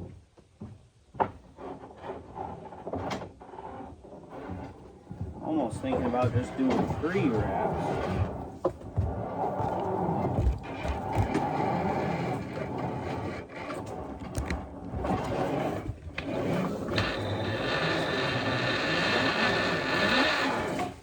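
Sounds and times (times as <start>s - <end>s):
wire rope rubbing and clicking: 2.4s - 21.0s
steady whirring: 5.4s - 8.5s, 14.4s - 21.0s.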